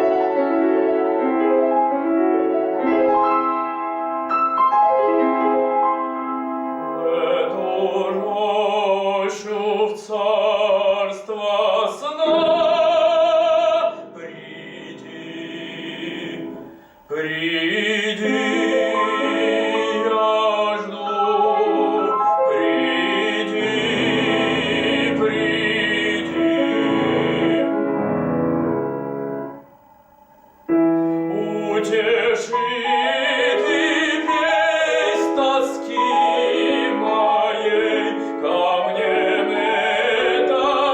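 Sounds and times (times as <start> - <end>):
piano accompaniment: 0.0 - 40.9
operatic solo singing: 7.0 - 28.0, 31.2 - 40.9.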